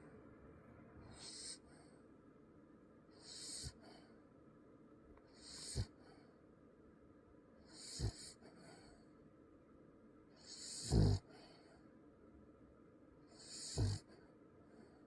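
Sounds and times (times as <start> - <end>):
dog snoring: 1.0 - 1.9, 3.2 - 4.1, 5.3 - 6.2, 7.6 - 9.0, 10.4 - 11.7, 13.3 - 14.2.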